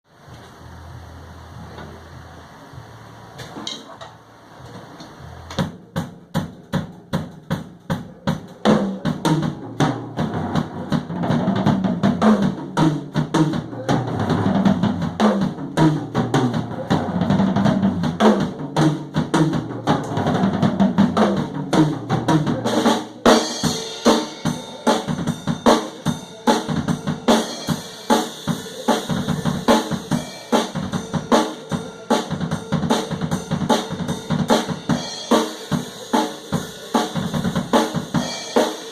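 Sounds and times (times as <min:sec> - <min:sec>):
drum beat: 0:05.5 - 0:38.9
cymbals washing: 0:22.8 - 0:38.9.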